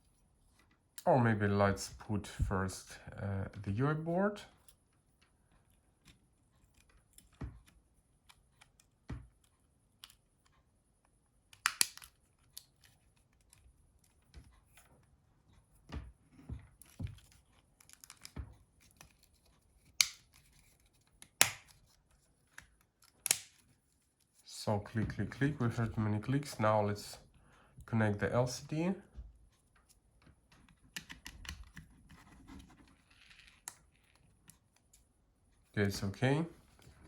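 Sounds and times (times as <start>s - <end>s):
plastic phone parts clicking: 11.5s - 14.8s, 16.8s - 23.7s, 30.6s - 32.2s.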